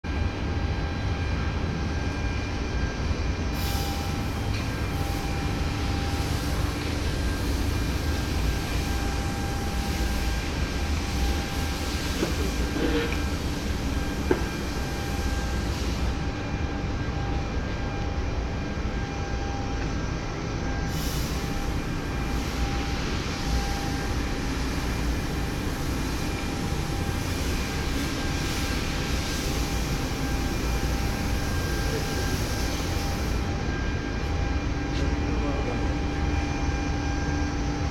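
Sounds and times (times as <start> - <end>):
continuous mechanical hiss: 0.1 - 37.9
milling machine spindle whine: 0.1 - 37.9.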